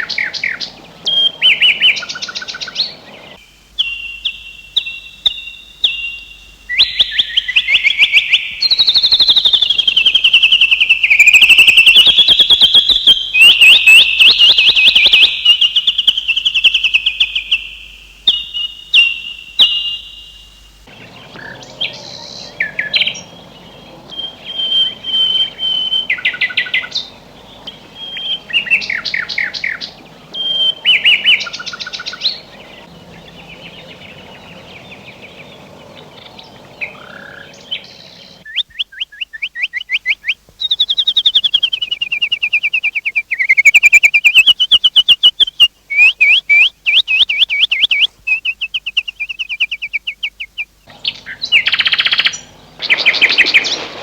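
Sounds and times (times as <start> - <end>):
faint background ambience: 0.0 - 54.0
songbirds chirping and trilling: 0.0 - 54.0.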